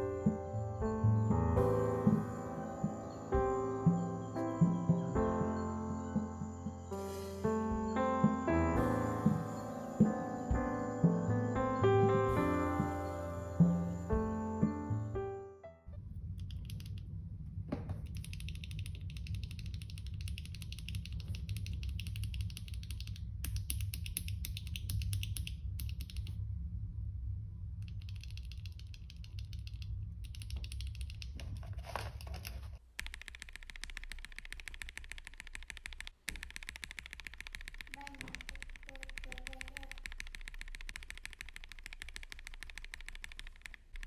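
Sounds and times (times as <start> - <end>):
low hum: 0.0 - 32.7
fast keyboard typing: 16.4 - 17.1, 18.0 - 26.4, 27.8 - 44.0.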